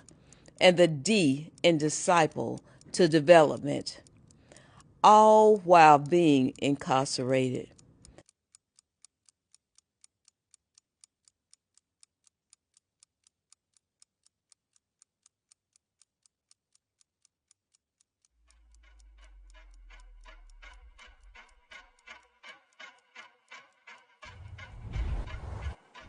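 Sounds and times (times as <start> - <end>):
clock ticking: 0.0 - 26.0
low music with bass drone: 18.4 - 21.8.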